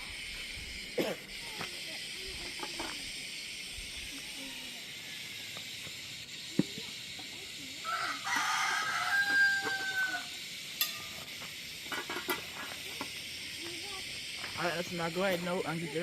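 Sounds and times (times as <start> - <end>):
steady hiss: 0.0 - 16.0
rooster crowing: 7.8 - 10.4.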